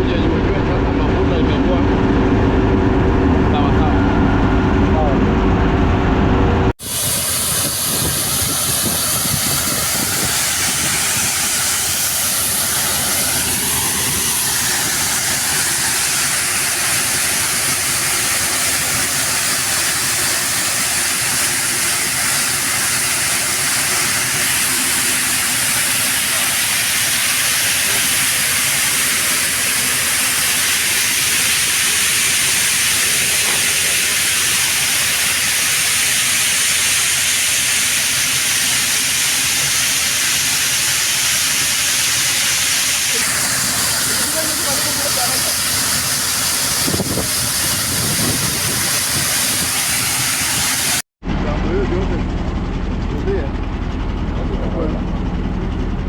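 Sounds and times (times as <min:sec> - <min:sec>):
grain dryer rushing hiss: 0:06.8 - 0:51.0.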